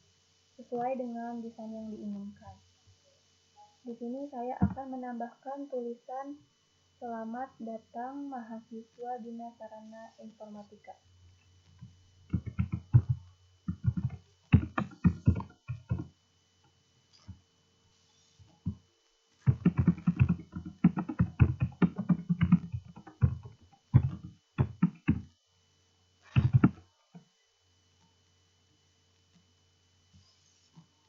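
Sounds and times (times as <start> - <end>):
computer keyboard typing: 12.3 - 16.1, 19.4 - 25.3, 26.3 - 26.8.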